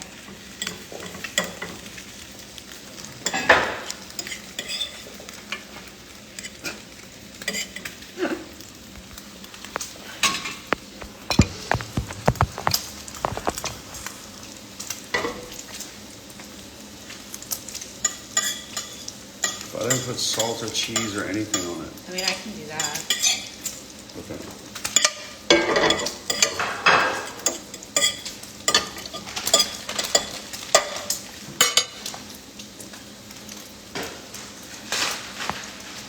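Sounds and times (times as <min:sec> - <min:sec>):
eggs and bacon sizzling in a pan: 0:00.0 - 0:36.0
utensil scraping and knocking pan: 0:09.8 - 0:14.4.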